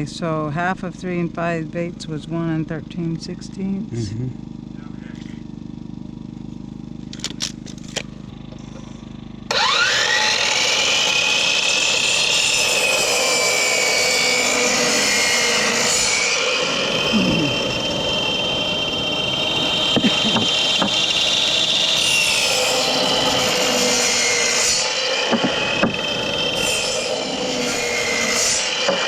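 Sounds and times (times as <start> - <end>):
power saw cutting wood: 8.5 - 29.0
low hum: 14.3 - 24.4.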